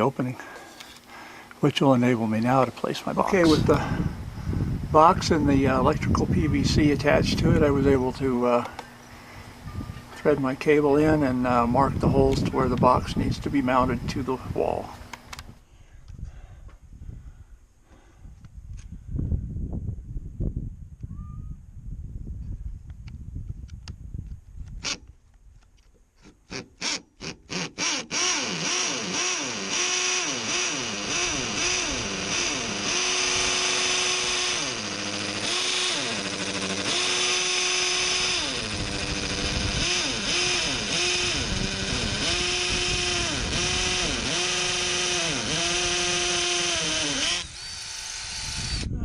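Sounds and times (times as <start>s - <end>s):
hammer drill boring into concrete: 26.5s - 48.9s.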